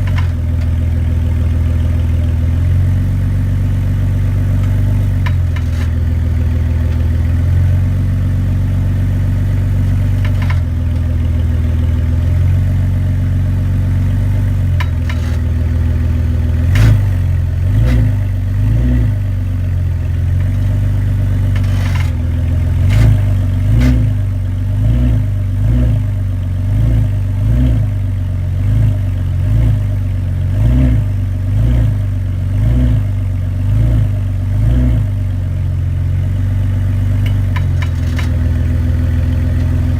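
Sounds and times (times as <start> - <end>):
car engine running: 0.0 - 39.9
sharp clunking knocks: 10.1 - 11.8.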